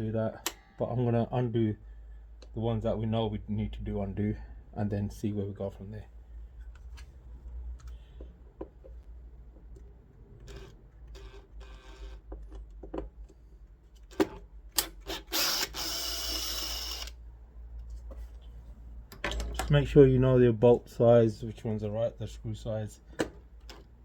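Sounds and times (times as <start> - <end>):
power driver whirring: 15.1 - 17.2.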